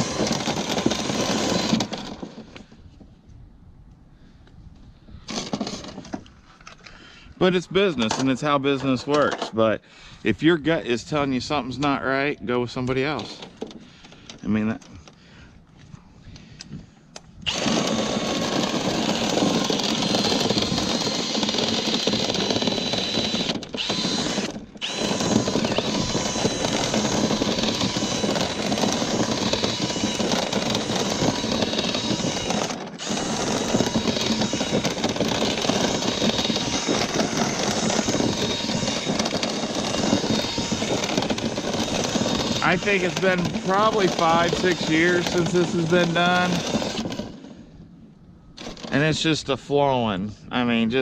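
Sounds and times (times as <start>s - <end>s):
power drill spinning brush in duct: 0.0s - 3.0s, 5.2s - 6.3s, 12.9s - 15.1s, 17.4s - 47.7s, 48.6s - 49.3s.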